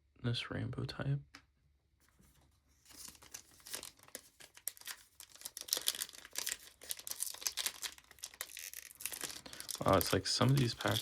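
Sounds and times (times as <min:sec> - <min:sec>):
plastic wrapper crinkling and tearing: 0:02.9 - 0:11.0.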